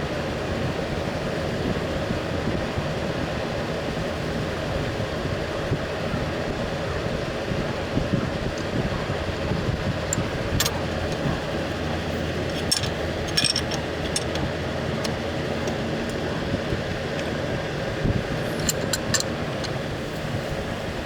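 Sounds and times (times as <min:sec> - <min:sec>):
low background hum: 0:06.0 - 0:21.0
metallic clicks of hand tools: 0:10.1 - 0:11.2, 0:12.4 - 0:16.2, 0:18.4 - 0:19.8.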